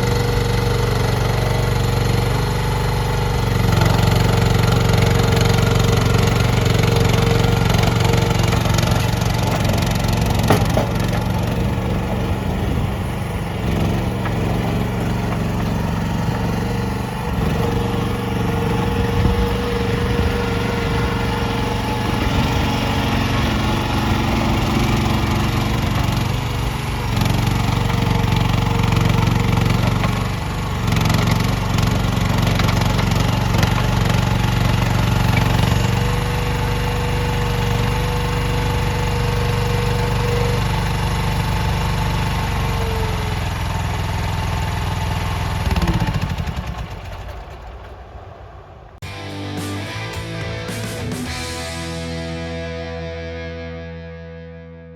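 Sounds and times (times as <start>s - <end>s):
skid steer engine running: 0.0s - 48.3s, 49.0s - 54.3s.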